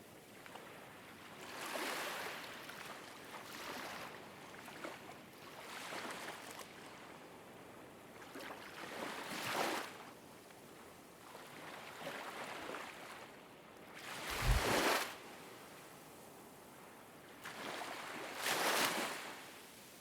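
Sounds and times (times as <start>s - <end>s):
ocean waves washing in: 14.3s - 14.9s.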